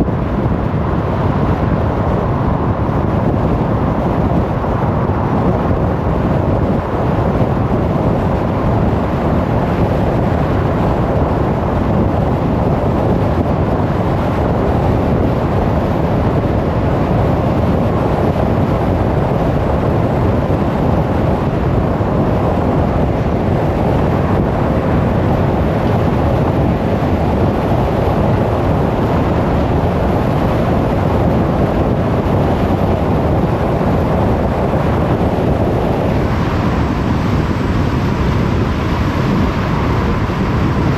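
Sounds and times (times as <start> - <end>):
car road noise at speed: 0.0 - 40.9.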